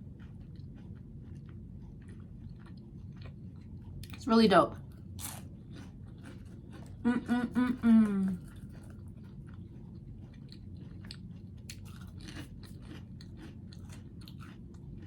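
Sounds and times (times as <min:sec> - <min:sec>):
person chewing with mouth clicks: 0:00.0 - 0:04.2, 0:05.2 - 0:15.0
person humming: 0:07.1 - 0:08.4.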